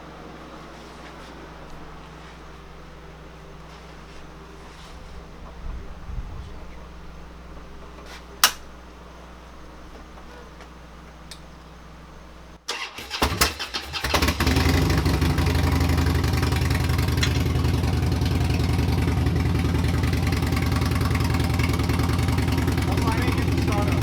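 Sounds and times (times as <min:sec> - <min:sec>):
motorcycle engine starting and idling: 0:12.7 - 0:24.0.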